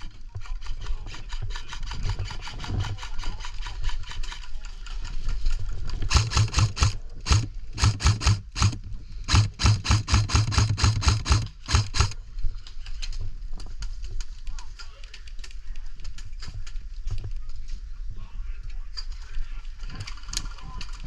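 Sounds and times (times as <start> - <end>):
gear rattling: 0.0 - 12.2.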